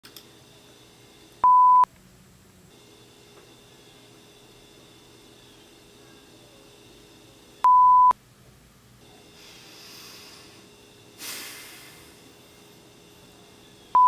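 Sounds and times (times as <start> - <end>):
electronic beep: 1.4 - 1.9, 7.6 - 8.2
short hissing burst: 9.4 - 12.3
faint hiss: 11.2 - 12.4.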